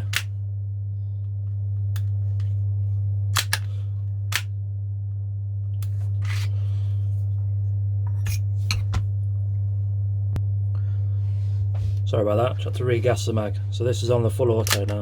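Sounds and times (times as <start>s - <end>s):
low electrical hum: 0.0s - 15.0s
clicks handling a pistol: 3.4s - 3.7s.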